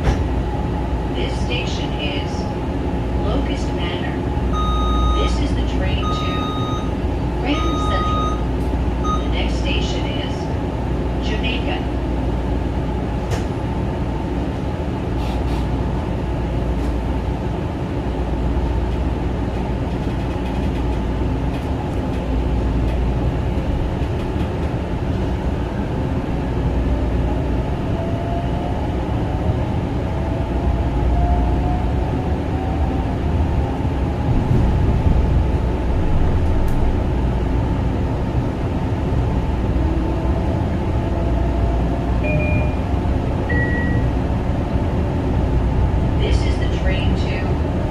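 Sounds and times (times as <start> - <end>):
train wheels rumbling on rail: 0.0 - 47.9.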